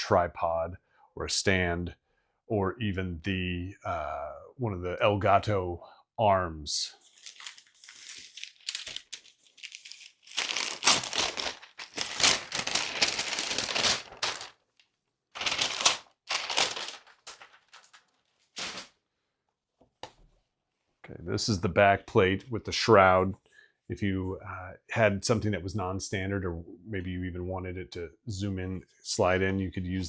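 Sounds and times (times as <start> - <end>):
packaging crinkling and rustling: 7.0 - 19.0.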